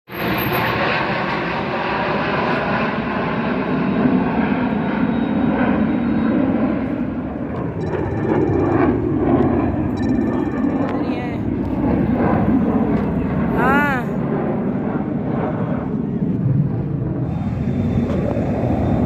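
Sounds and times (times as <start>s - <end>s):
military aircraft engine roar: 0.1s - 19.0s.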